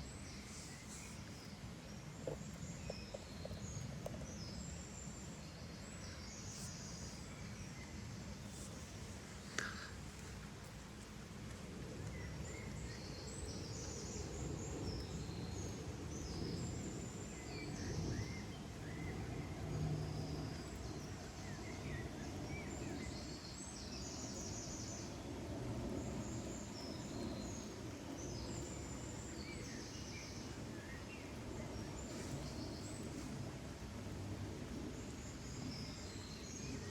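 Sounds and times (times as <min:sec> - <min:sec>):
low rushing background noise: 0:00.0 - 0:36.9.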